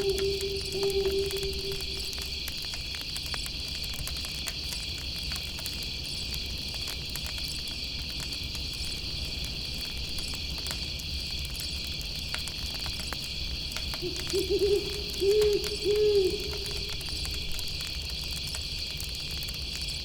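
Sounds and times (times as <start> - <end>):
owl hooting: 0.0 - 2.6, 14.0 - 17.6
campfire crackling: 0.0 - 20.0
crickets chirring: 0.0 - 20.0.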